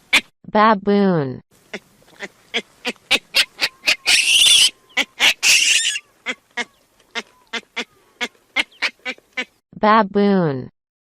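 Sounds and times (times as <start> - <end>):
baboon scream: 2.8 - 7.9.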